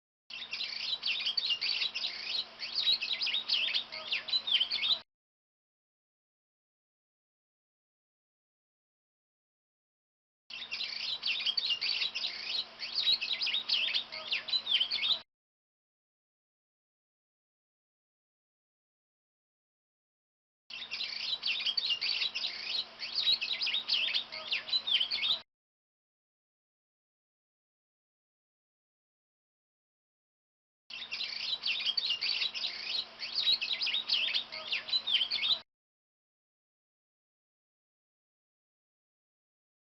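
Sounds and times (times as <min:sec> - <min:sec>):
bird chirping and twittering: 0:00.3 - 0:05.0, 0:10.5 - 0:15.2, 0:20.7 - 0:25.4, 0:30.9 - 0:35.6
songbird singing: 0:00.3 - 0:05.0, 0:10.5 - 0:15.2, 0:20.7 - 0:25.4, 0:30.9 - 0:35.6.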